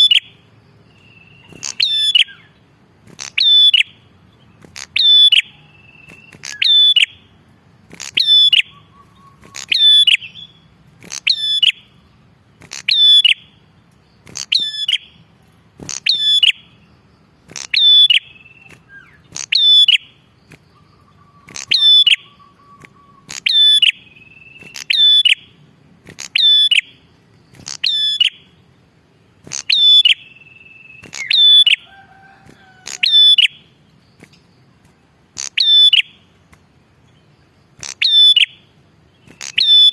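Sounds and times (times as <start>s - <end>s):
faint bird whistles: 1.0s - 2.6s, 5.0s - 7.2s, 8.1s - 10.6s, 17.7s - 25.4s, 29.5s - 33.6s
bird's loud sharp high call: 20.8s - 25.4s.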